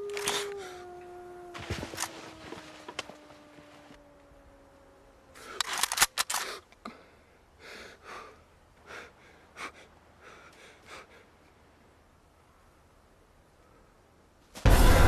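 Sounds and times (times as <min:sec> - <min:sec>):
person breathing hard: 0:06.4 - 0:11.4.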